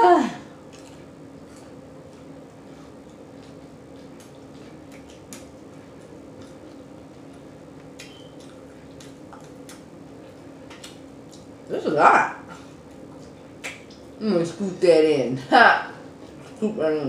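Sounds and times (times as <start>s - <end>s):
steady low hum: 0.0s - 17.0s
wet chewing and lip-smacking: 0.6s - 11.7s, 12.5s - 14.2s.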